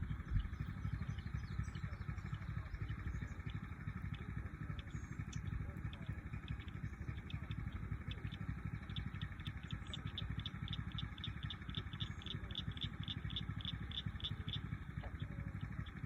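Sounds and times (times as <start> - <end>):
low fluttering rumble: 0.0 - 16.0
high repeating chirp: 6.4 - 14.7.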